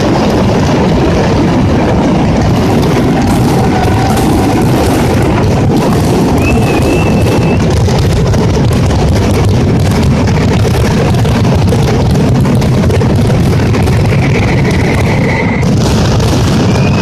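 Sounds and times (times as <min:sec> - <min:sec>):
firecracker barrage: 0:00.0 - 0:17.0
firework whistle: 0:02.5 - 0:08.2, 0:14.1 - 0:15.8, 0:16.4 - 0:17.0.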